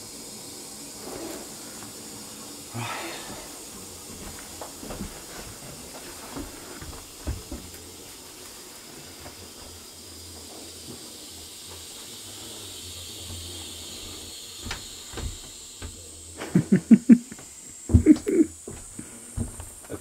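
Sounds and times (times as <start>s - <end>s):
steady hiss: 0.0s - 20.0s.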